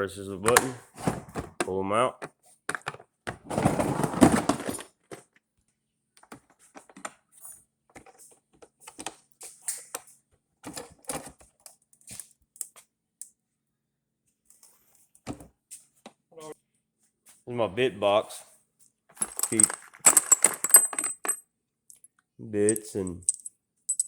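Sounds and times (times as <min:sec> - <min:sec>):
plastic cases clicking and knocking: 0:00.4 - 0:05.3, 0:19.2 - 0:21.4.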